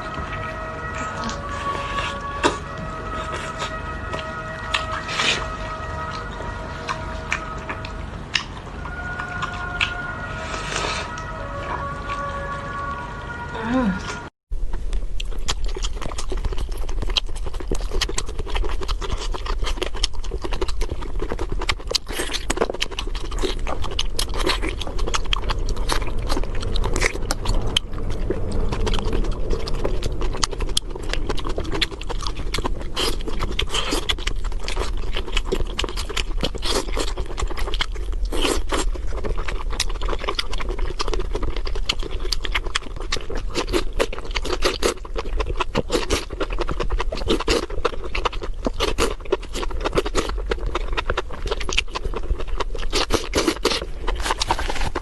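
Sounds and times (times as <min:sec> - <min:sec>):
wet chewing and mouth smacking: 0:00.0 - 0:13.4, 0:14.0 - 0:55.0
low hum: 0:00.0 - 0:52.9.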